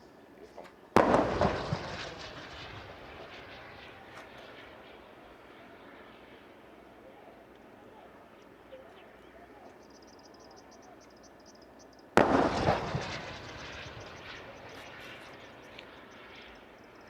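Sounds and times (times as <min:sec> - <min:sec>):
artillery boom echoing: 0:01.0 - 0:04.9, 0:12.2 - 0:15.7.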